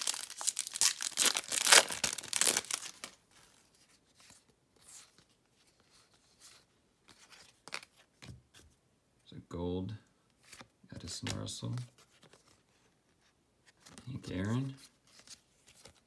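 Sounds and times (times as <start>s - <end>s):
crinkly wrapper tearing: 0.0s - 3.2s
cards rustling and clicking: 0.0s - 8.6s, 10.3s - 12.7s, 13.7s - 16.0s.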